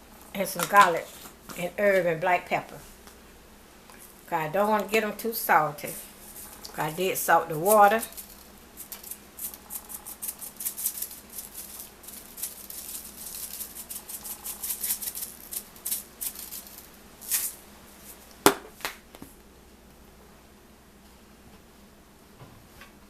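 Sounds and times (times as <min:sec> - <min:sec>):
shaker bottle rattling: 0:07.6 - 0:18.2.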